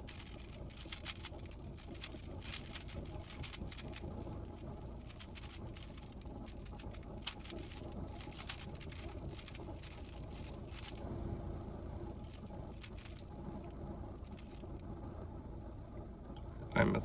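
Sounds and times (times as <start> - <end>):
puzzle cube clicking and rattling: 0.0 - 11.1, 12.2 - 13.4, 14.2 - 14.7.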